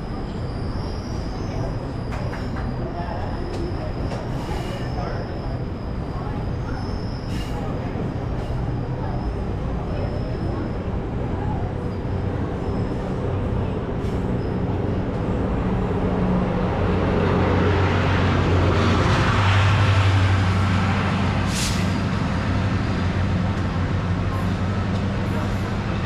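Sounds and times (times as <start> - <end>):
diesel locomotive engine drone: 0.0 - 26.0
sharp air hiss: 21.5 - 22.0.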